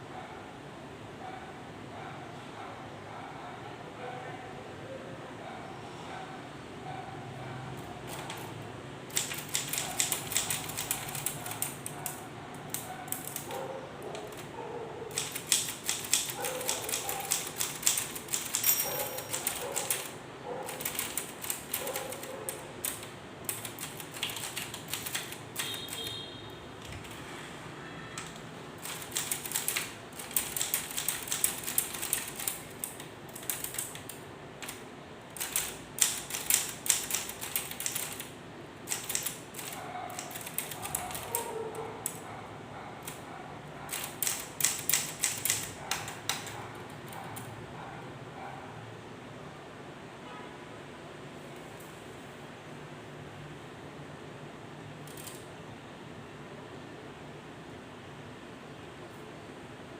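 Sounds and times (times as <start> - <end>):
typewriter keys clacking: 8.1 - 14.5, 15.1 - 26.2, 26.8 - 27.2, 28.2 - 42.2, 43.9 - 47.5, 55.1 - 55.5.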